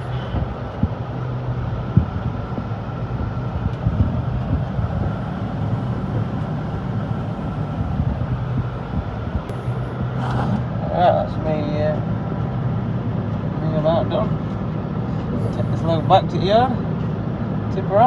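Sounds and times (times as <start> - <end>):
tractor engine running: 0.0 - 18.0.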